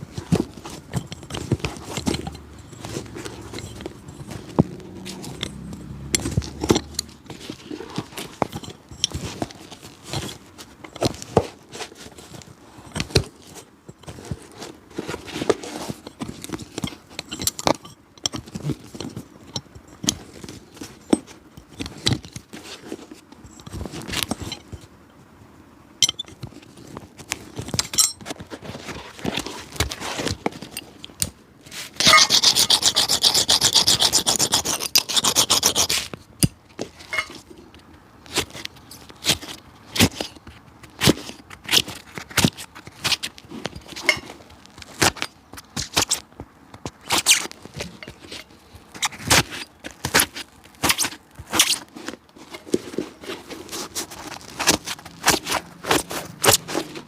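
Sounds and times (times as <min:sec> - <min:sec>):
rubbing and scraping on shoe: 0:00.0 - 0:17.4, 0:28.3 - 0:30.8, 0:31.6 - 0:57.0.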